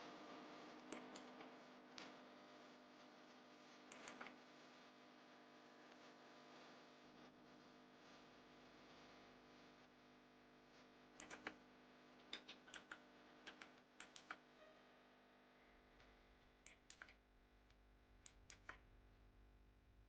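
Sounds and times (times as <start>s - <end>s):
mechanical keyboard keystrokes: 11.2s - 11.6s, 12.3s - 14.4s.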